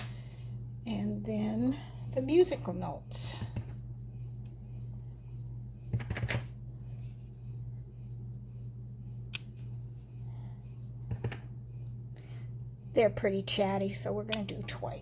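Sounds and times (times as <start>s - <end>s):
steady low hum: 0.0s - 15.0s
rubber stamp tapping on card: 11.1s - 11.4s.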